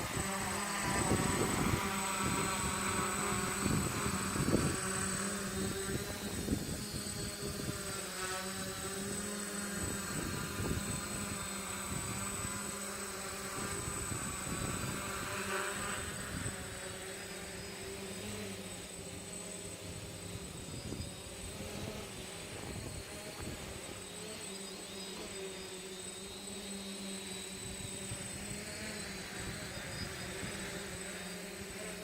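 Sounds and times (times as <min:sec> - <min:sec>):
wind rumbling on microphone: 0:00.0 - 0:08.0, 0:09.7 - 0:12.7, 0:13.5 - 0:16.9, 0:19.9 - 0:24.0
drone propellers buzzing: 0:00.0 - 0:32.0.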